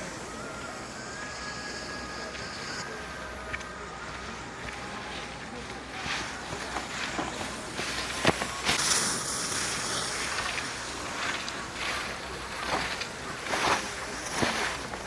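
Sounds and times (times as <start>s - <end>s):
skis scraping over packed snow: 3.6s - 15.0s.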